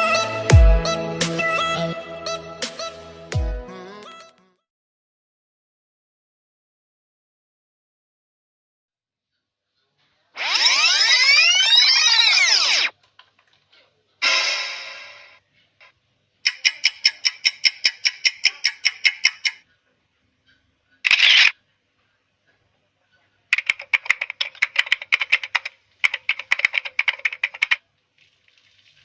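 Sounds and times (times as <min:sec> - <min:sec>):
quick evenly spaced clicking: 0:16.5 - 0:19.6, 0:23.6 - 0:27.8.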